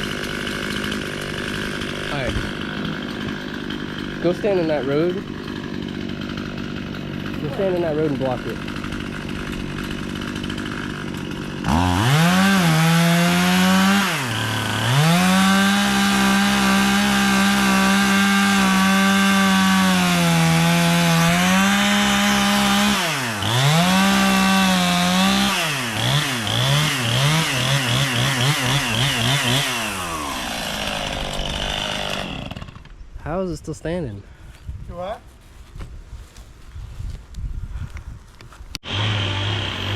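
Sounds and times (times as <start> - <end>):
chainsaw cutting wood: 0.0 - 33.0, 38.8 - 39.9.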